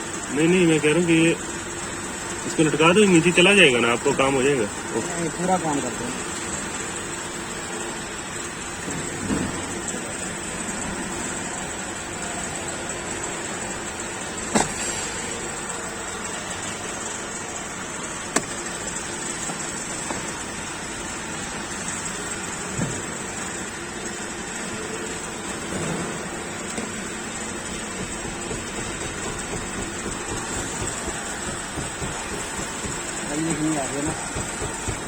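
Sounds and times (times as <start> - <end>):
car cabin noise: 8.8 - 23.7, 24.5 - 35.0.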